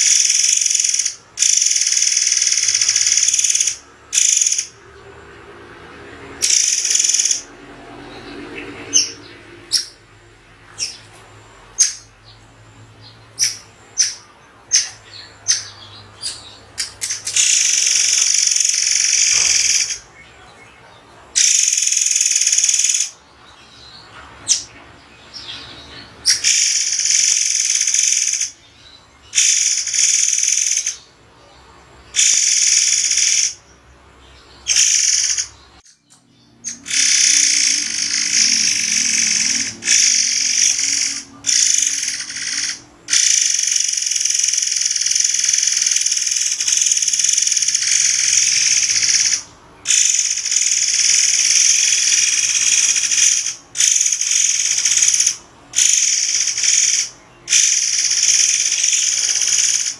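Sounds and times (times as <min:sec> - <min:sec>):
bird calling in shrill bursts: 0:00.0 - 0:04.8, 0:06.4 - 0:07.5, 0:17.2 - 0:20.1, 0:21.4 - 0:23.2, 0:26.2 - 0:28.6, 0:29.3 - 0:31.1, 0:32.1 - 0:33.6, 0:34.6 - 0:35.6, 0:36.7 - 0:59.9
sharp bird chirps: 0:00.0 - 0:04.9, 0:06.3 - 0:10.0, 0:10.7 - 0:20.6, 0:21.4 - 0:31.1, 0:32.1 - 0:59.9.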